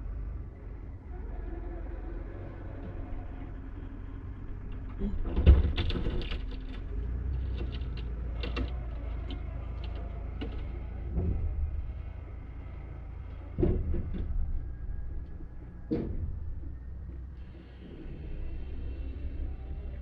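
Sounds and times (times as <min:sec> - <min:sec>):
vehicle engine rumbling: 0:00.0 - 0:20.0
knocks and rattles: 0:04.4 - 0:17.7.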